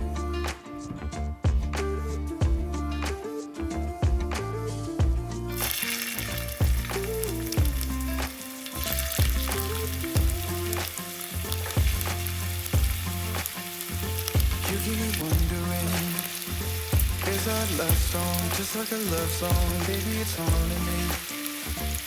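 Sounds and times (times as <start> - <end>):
instrumental music beat: 0.0 - 22.0
food sizzling in oil: 5.4 - 22.0.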